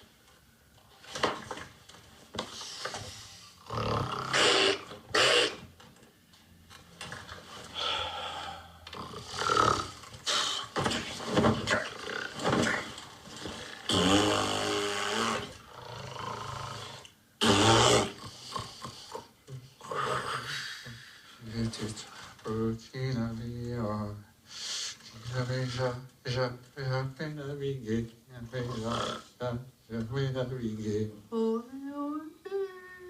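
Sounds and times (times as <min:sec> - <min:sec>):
woman snoring loudly: 0:03.6 - 0:05.6, 0:07.8 - 0:10.5, 0:13.7 - 0:18.8.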